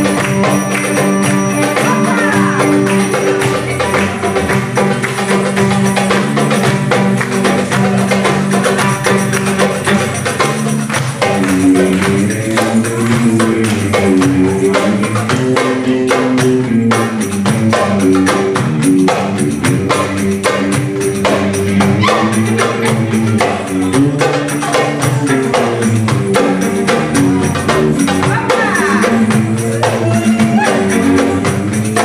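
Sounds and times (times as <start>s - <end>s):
fast hand percussion beat: 0.0s - 32.0s.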